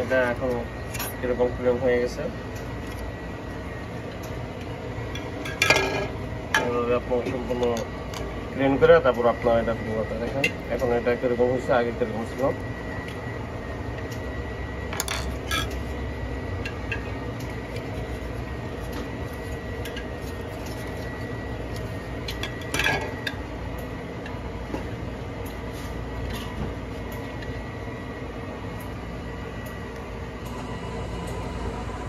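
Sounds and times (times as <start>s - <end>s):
steady low hum: 0.0s - 32.0s
metal parts clinking: 15.0s - 15.7s.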